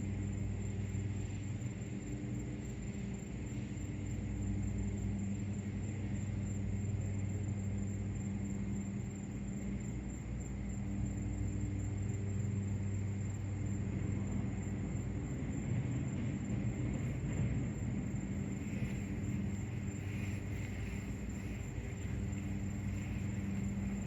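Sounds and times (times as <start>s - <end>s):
low droning rumble: 15.5s - 24.0s.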